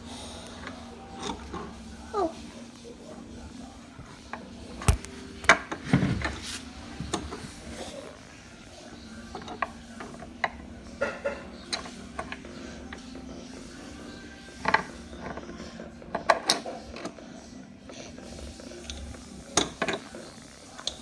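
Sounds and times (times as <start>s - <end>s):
screwdriver clicking and scraping: 4.8s - 5.6s.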